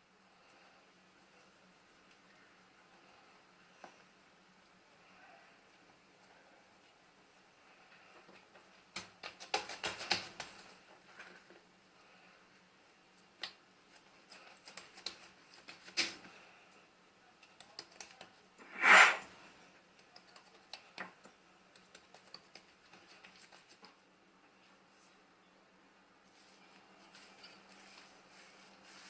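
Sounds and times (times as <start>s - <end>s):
faint steady hum: 0.0s - 9.0s, 10.5s - 29.0s
brief scraping or rustling: 18.6s - 19.3s.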